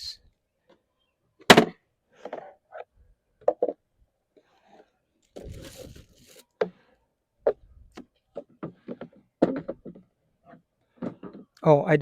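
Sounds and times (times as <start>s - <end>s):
rustling: 4.6s - 6.5s.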